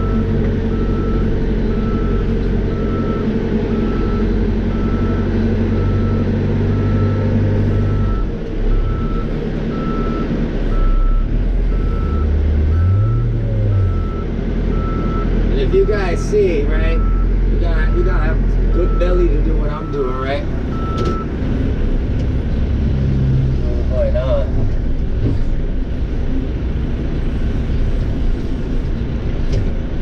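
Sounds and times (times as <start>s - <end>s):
reversing alarm beeping: 0.0s - 16.3s, 17.0s - 21.3s
diesel engine running: 0.0s - 30.0s.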